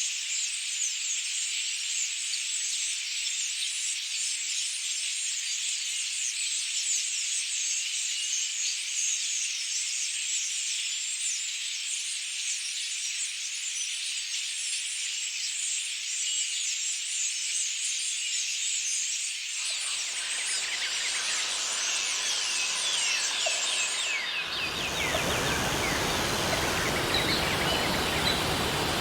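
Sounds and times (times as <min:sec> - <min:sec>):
buzzing insects chorus: 0:19.6 - 0:29.0
low rushing sound: 0:19.7 - 0:29.0.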